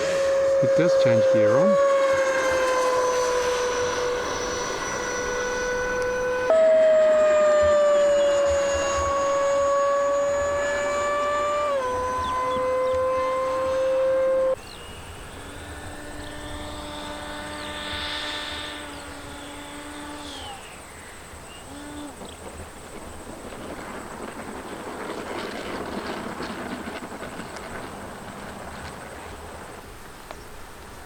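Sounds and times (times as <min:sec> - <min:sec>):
model plane motor droning: 0:00.0 - 0:31.0
rushing noise of passing plane: 0:00.0 - 0:31.0.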